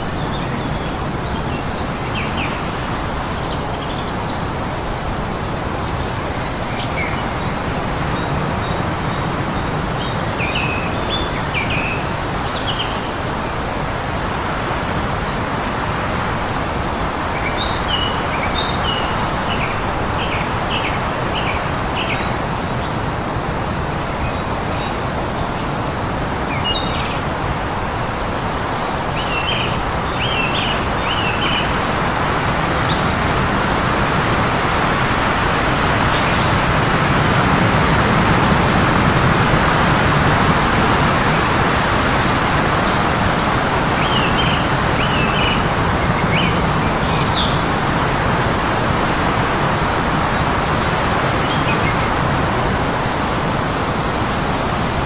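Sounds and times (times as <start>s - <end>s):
heavy wind blowing: 0.0s - 55.0s
small birds chirping: 24.2s - 38.8s, 39.4s - 54.0s.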